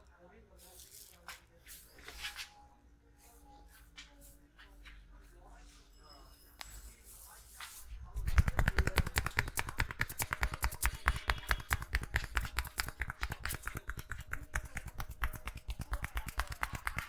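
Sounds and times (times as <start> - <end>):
hands tapping on head: 8.2 - 17.0.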